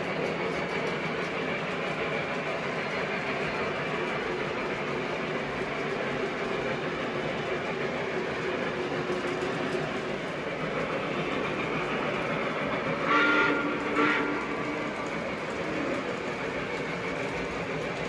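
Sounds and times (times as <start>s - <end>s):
model train rumbling on track: 0.0s - 18.0s
train whistle toots: 13.0s - 15.0s.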